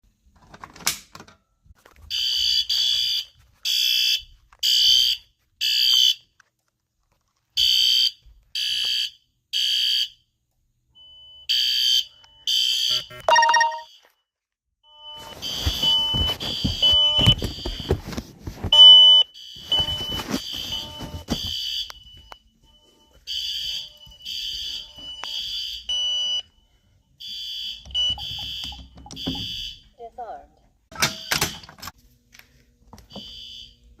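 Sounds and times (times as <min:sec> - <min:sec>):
fire alarm beeping: 0:02.1 - 0:06.2, 0:07.6 - 0:10.2, 0:10.9 - 0:14.1, 0:14.8 - 0:18.0, 0:18.7 - 0:30.0, 0:30.9 - 0:31.8, 0:33.0 - 0:33.9
low alarm tone: 0:11.0 - 0:13.9.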